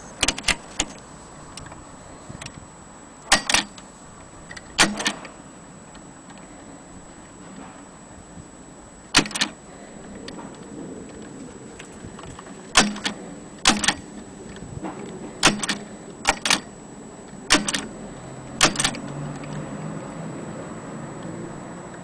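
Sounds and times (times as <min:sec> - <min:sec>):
typewriter double clicks: 0:00.2 - 0:01.0, 0:03.3 - 0:03.8, 0:04.8 - 0:05.3, 0:09.1 - 0:09.6, 0:12.8 - 0:14.1, 0:15.4 - 0:16.7, 0:17.5 - 0:17.9, 0:18.6 - 0:19.0.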